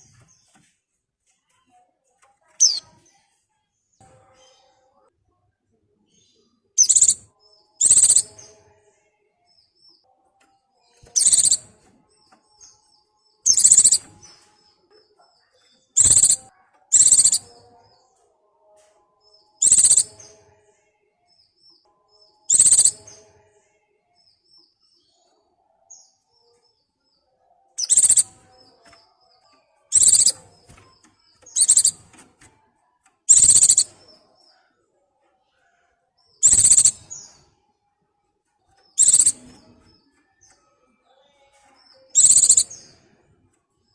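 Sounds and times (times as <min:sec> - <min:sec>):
high-pitched bird calls: 0:02.6 - 0:02.8, 0:06.8 - 0:08.5, 0:11.0 - 0:11.8, 0:13.5 - 0:14.3, 0:15.9 - 0:17.6, 0:19.6 - 0:20.4, 0:22.5 - 0:23.2, 0:27.8 - 0:29.0, 0:29.9 - 0:32.3, 0:33.3 - 0:34.1, 0:36.4 - 0:37.4, 0:39.0 - 0:39.8, 0:41.9 - 0:42.9
soft bird twittering: 0:02.6 - 0:02.9, 0:06.8 - 0:08.6, 0:11.0 - 0:11.8, 0:13.5 - 0:14.5, 0:15.8 - 0:17.6, 0:19.6 - 0:20.4, 0:22.5 - 0:23.2, 0:27.8 - 0:29.0, 0:29.8 - 0:32.3, 0:33.3 - 0:34.2, 0:36.3 - 0:37.5, 0:38.9 - 0:40.6, 0:41.9 - 0:42.9.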